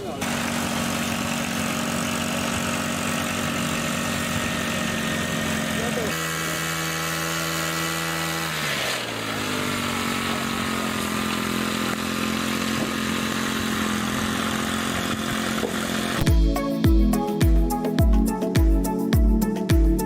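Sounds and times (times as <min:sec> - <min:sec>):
machine motor running: 0:00.0 - 0:16.3
music with a beat: 0:16.2 - 0:20.0.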